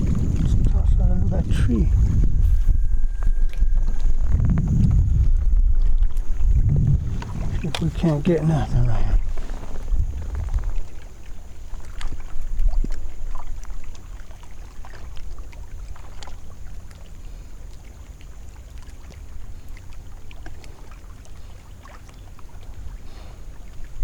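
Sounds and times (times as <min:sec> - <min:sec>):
wind on microphone: 0:00.0 - 0:13.9
water lapping: 0:00.0 - 0:24.0.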